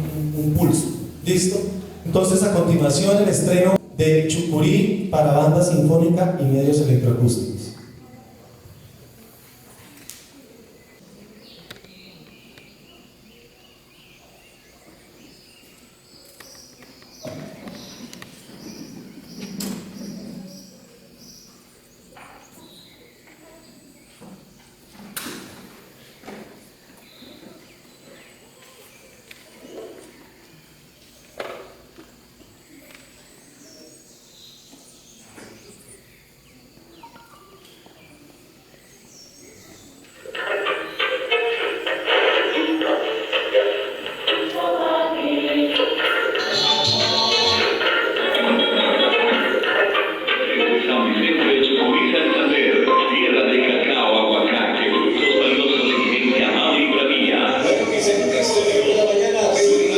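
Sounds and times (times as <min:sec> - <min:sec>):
steady background hiss: 0:00.0 - 0:59.9
insect sounds: 0:00.1 - 0:59.9
birds chirping: 0:10.5 - 0:24.8, 0:32.5 - 0:59.9
electroacoustic music: 0:40.3 - 0:59.9.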